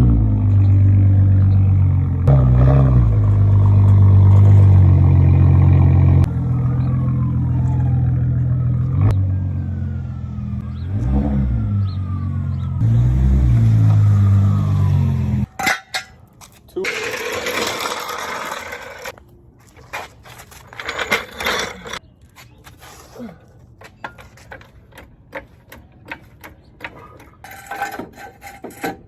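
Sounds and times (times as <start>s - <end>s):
handling clicks and knocks: 23.7s - 28.2s.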